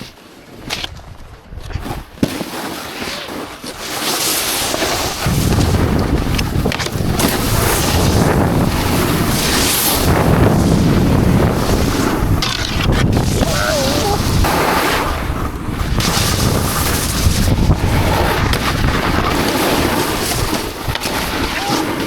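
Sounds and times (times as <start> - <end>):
snowboard scraping over snow: 1.7 - 22.0
wind buffeting microphone: 5.0 - 22.0.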